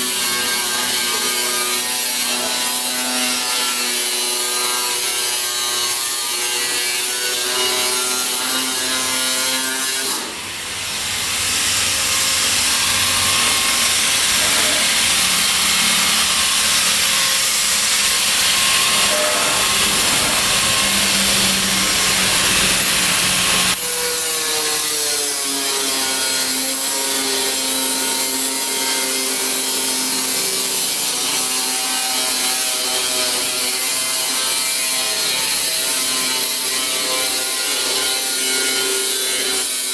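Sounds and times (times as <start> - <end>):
steel plate cutting screech: 12.0 - 26.2.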